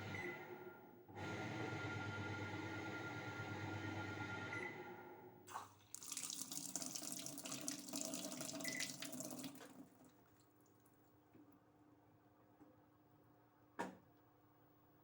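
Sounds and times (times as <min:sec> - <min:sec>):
washing machine hum: 0:01.2 - 0:11.6.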